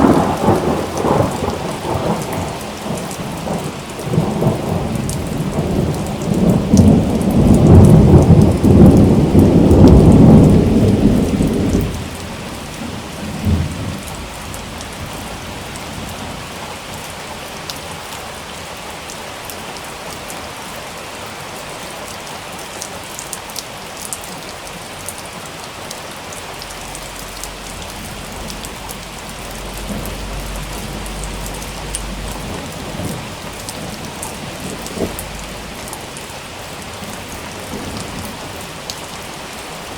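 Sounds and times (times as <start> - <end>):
thunder rumbling: 0.0 - 18.0, 24.9 - 39.9
heavy steady rain: 0.0 - 39.9.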